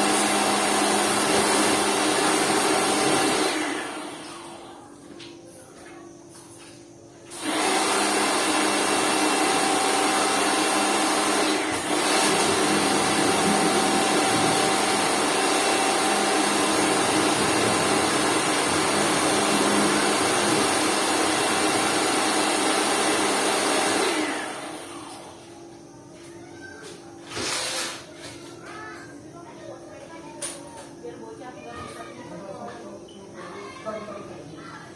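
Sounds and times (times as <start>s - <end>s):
pressure washer whirring: 0.0s - 4.8s, 7.3s - 25.6s.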